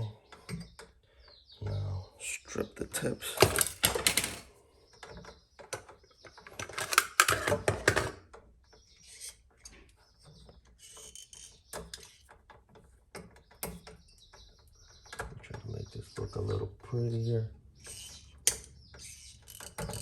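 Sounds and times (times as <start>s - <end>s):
wire strippers clicking and scraping: 3.0s - 16.2s, 17.8s - 20.0s.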